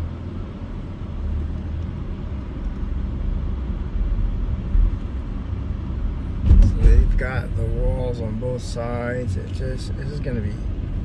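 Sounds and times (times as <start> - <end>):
car engine and tyres rumbling: 0.0 - 11.0
car bump: 6.4 - 7.6.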